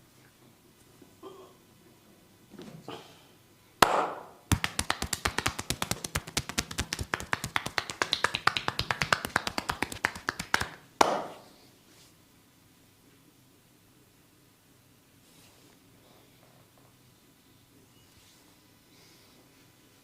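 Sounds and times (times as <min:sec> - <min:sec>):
hands tapping on a back: 0:03.8 - 0:11.4
loud slap: 0:03.8 - 0:11.4.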